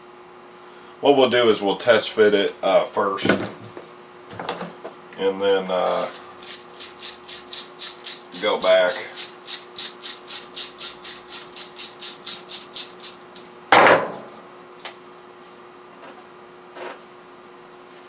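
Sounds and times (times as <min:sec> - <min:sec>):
hand tool rasping: 0:05.9 - 0:13.2.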